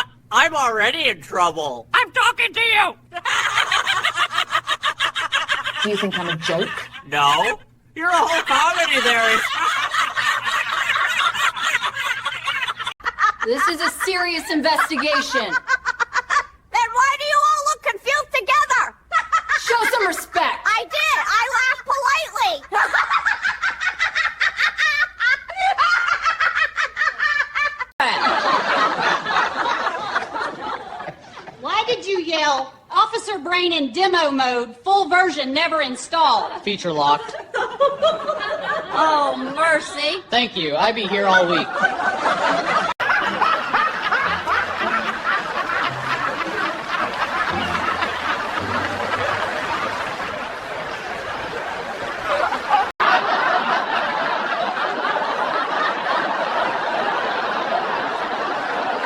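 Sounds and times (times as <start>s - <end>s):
people chuckling together: 3.2s - 7.5s, 8.6s - 16.6s, 41.2s - 59.0s
echoing burst of laughter: 41.8s - 59.0s
high-pitched laughter: 42.3s - 52.9s.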